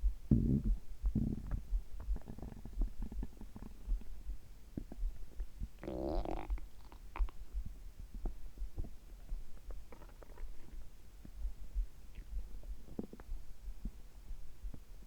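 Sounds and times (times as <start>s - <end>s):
heartbeat thumps: 0.0s - 15.0s
stomach gurgling: 0.3s - 4.1s, 4.8s - 7.6s, 9.6s - 10.8s, 12.1s - 14.0s.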